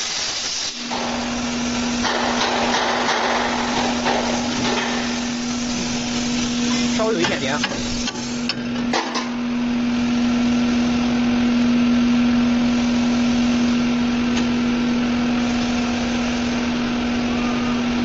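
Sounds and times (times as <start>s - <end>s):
plasma cutter hissing: 0.0s - 8.7s, 12.4s - 17.2s.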